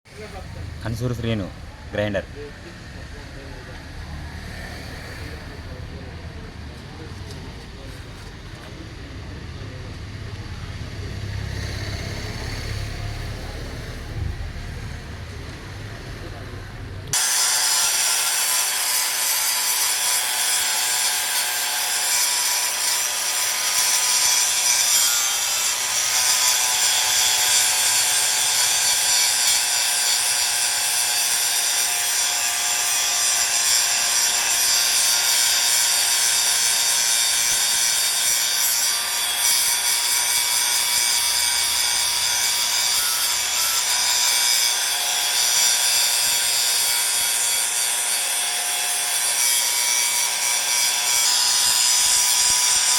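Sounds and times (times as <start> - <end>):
power grinder grinding: 10.8 - 14.1, 17.1 - 52.9.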